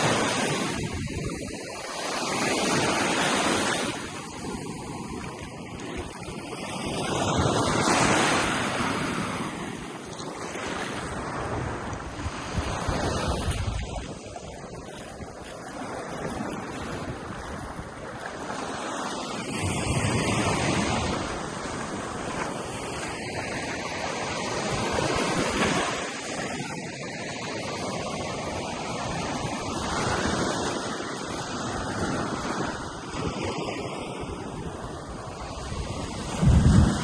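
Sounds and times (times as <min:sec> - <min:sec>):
surf breaking on sandy beach: 0:00.0 - 0:37.0
wind rumble on microphone: 0:00.0 - 0:37.0.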